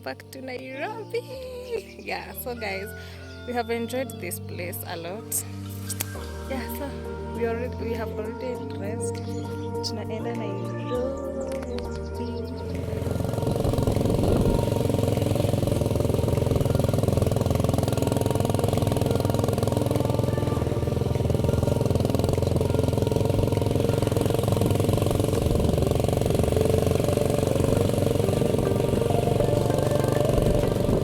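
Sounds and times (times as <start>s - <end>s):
vehicle engine and road rumble: 11.3s - 31.0s.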